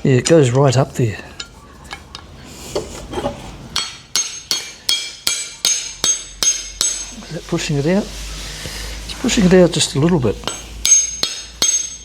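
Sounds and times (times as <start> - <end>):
ringing metal-on-metal strikes: 3.8 - 7.2, 10.4 - 12.0.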